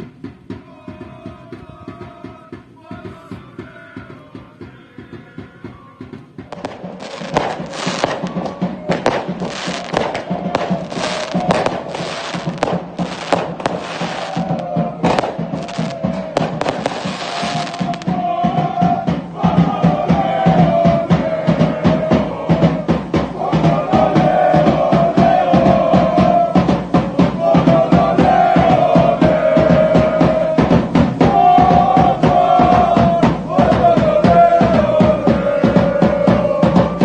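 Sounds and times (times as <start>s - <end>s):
bass drum: 0.0s - 37.0s
dense drum strokes: 0.0s - 37.0s
melody over drum beat: 6.0s - 34.0s.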